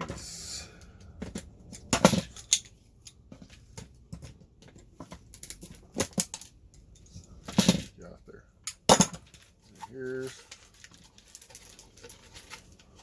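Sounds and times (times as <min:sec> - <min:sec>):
plastic and metal parts clicking: 0:01.0 - 0:07.9.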